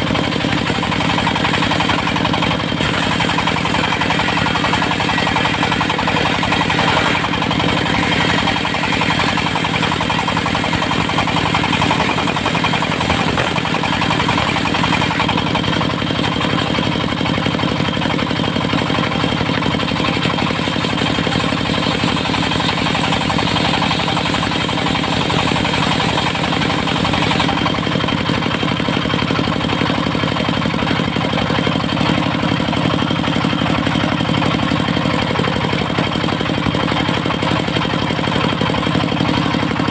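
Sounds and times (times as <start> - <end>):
diesel engine knocking: 0.0 - 39.9.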